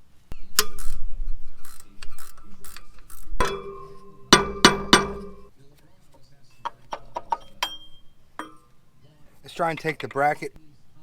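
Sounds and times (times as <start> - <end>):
ratchet clicks: 0.6 - 5.5
ringing metal clanks: 1.6 - 5.5, 6.5 - 8.8
sharp metal strikes: 3.4 - 5.5.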